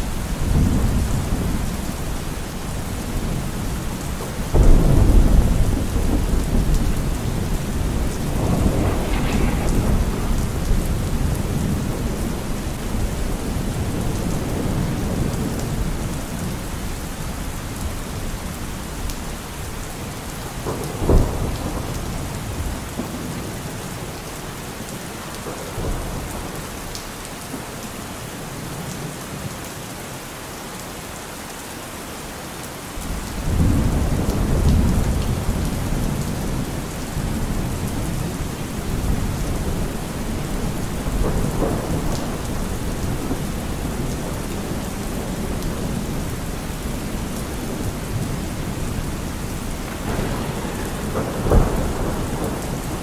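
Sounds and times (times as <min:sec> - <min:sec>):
thunder clap: 0:00.0 - 0:16.9, 0:20.5 - 0:23.8, 0:33.0 - 0:53.0
low rumble of thunder: 0:00.0 - 0:27.6, 0:33.0 - 0:53.0
steady rain: 0:00.0 - 0:53.0.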